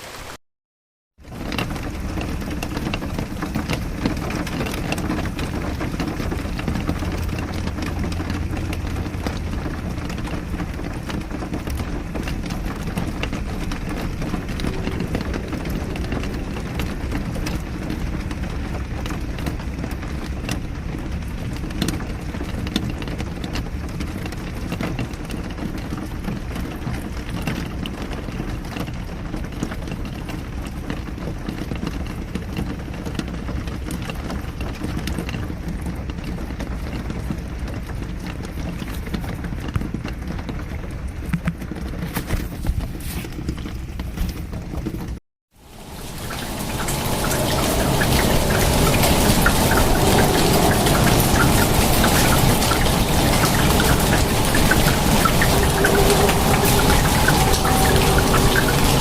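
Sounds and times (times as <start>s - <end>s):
steady rain patter: 0.0s - 0.4s, 1.2s - 59.0s
low rumble: 4.1s - 20.8s, 45.6s - 59.0s.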